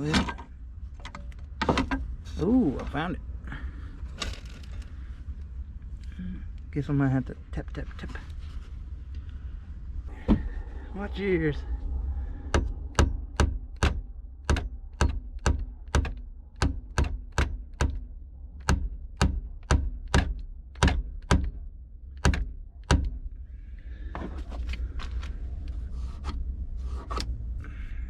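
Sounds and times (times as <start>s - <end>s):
hammer tapping: 12.5s - 18.0s.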